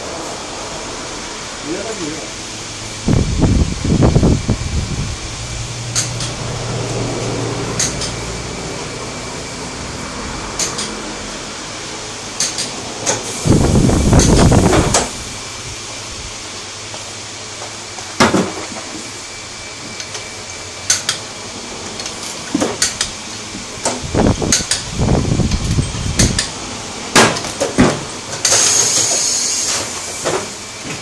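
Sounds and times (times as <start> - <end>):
air hiss: 13.1 - 15.6, 28.4 - 30.6.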